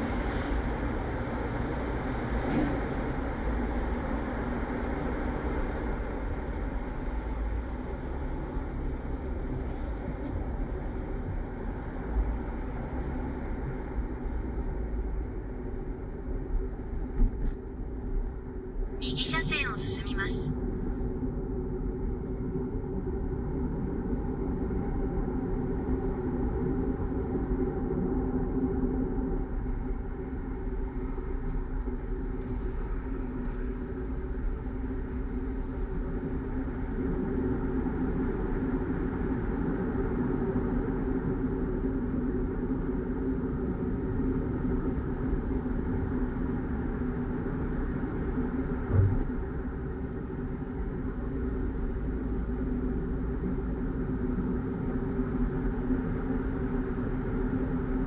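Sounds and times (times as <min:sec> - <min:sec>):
car engine and tyre rumble: 0:00.0 - 0:19.0, 0:20.7 - 0:58.0
brief thump: 0:48.9 - 0:49.5.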